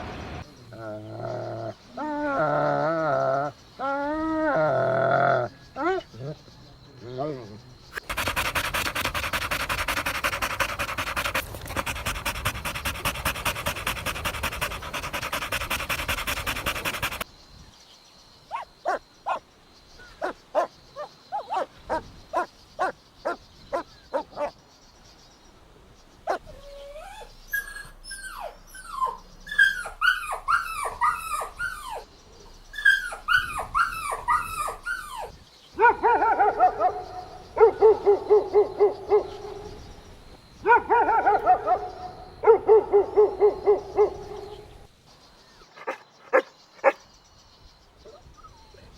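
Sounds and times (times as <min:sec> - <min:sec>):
dog rasping noise: 0:08.0 - 0:17.2
dog yipping: 0:26.3 - 0:32.0, 0:45.8 - 0:47.0.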